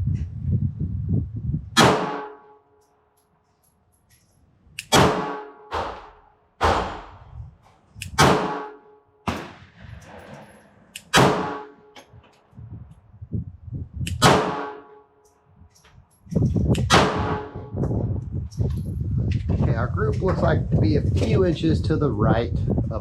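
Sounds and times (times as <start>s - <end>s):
pistol shots: 1.8s - 2.4s, 4.8s - 7.2s, 8.1s - 10.1s, 11.0s - 11.8s, 14.1s - 14.9s, 16.9s - 17.6s.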